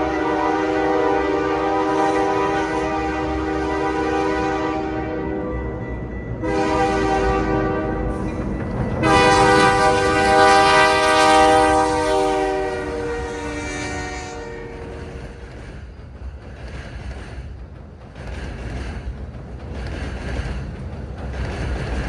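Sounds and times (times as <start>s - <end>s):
locomotive air horn chord: 0.0s - 5.8s, 6.4s - 8.3s, 9.0s - 15.1s
low rumble of passing train: 0.0s - 22.0s.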